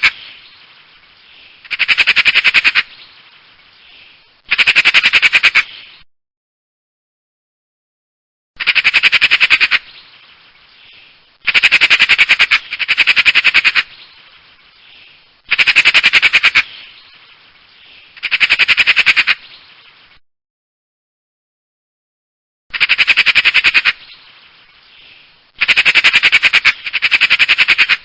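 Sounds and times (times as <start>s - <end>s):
magpie chattering rattle: 1.6s - 3.0s, 4.5s - 5.7s, 8.6s - 10.0s, 11.4s - 14.0s, 15.5s - 17.0s, 18.1s - 19.5s, 22.7s - 24.2s, 25.6s - 28.0s.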